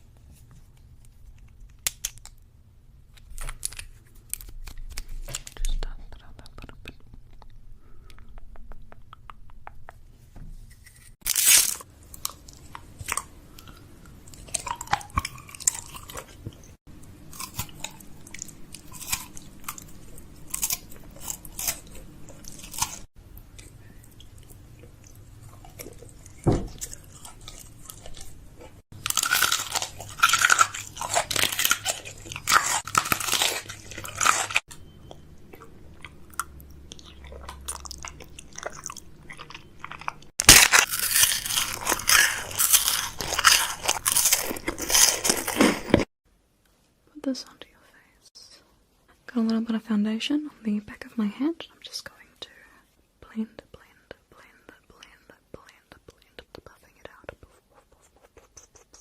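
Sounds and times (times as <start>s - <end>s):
crisp crunching and clicking: 3.1s - 5.9s, 17.3s - 23.7s, 25.6s - 46.1s
sharp crack: 40.4s - 45.1s.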